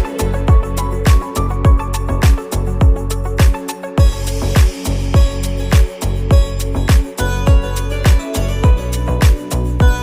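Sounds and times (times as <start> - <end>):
deep kick drum: 0.0 - 10.0
sharp percussion: 0.0 - 10.0.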